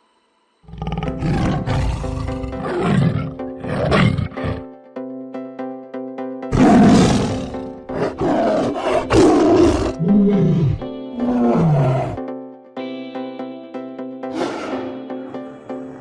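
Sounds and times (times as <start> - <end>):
background music: 0.0 - 16.0
tiger roaring: 0.7 - 4.7, 6.5 - 12.2.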